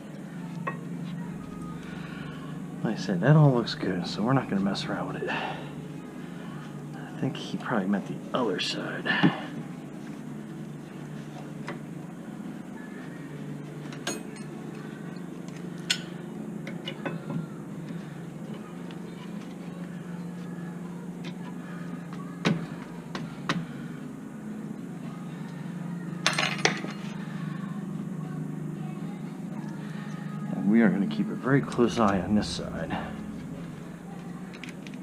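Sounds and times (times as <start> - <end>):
steady low hum: 0.0 - 35.0.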